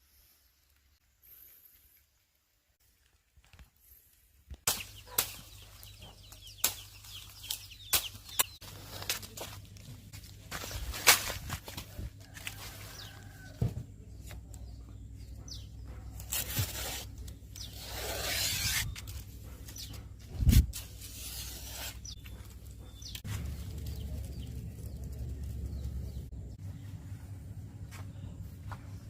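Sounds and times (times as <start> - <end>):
rustling: 2.8 - 13.4.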